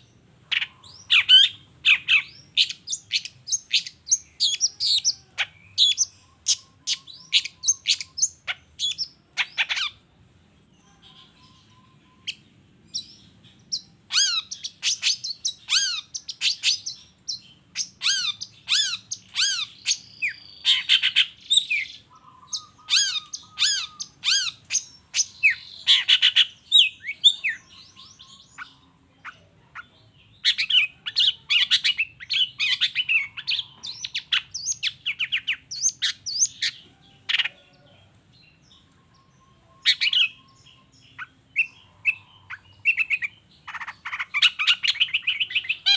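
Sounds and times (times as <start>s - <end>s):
bird singing whistled notes: 0.0s - 9.2s, 10.7s - 28.9s, 38.5s - 45.9s
harsh squawky bird calls: 0.0s - 10.0s, 10.8s - 37.9s, 39.2s - 45.9s.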